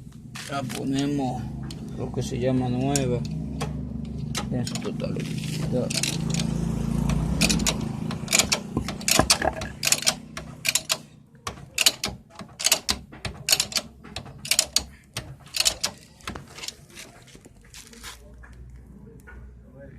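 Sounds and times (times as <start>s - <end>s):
hand tools clicking on metal: 5.8s - 17.2s.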